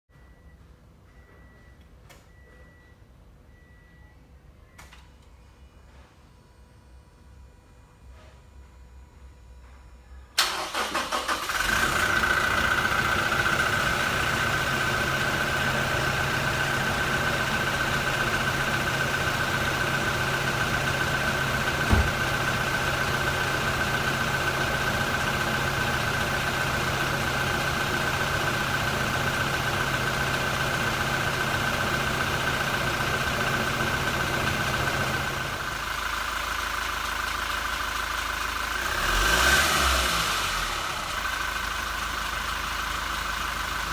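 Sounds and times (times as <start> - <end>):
diesel engine idling: 10.4 - 43.9.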